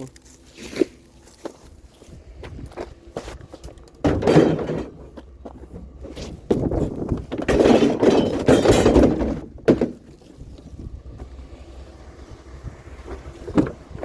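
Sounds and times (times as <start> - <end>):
clattering and scraping: 2.6 - 10.9
sharp thunk: 4.0 - 5.0.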